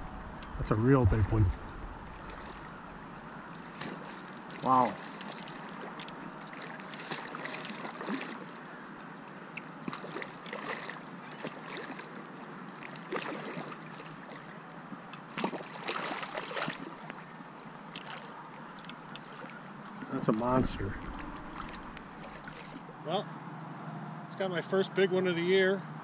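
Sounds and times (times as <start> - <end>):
river water splashing: 0.0 - 23.3.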